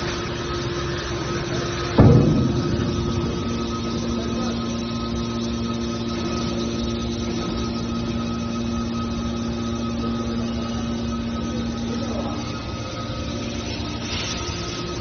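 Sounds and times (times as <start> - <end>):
baler machine mechanical hum: 0.0 - 15.0
faint high whine: 0.0 - 15.0.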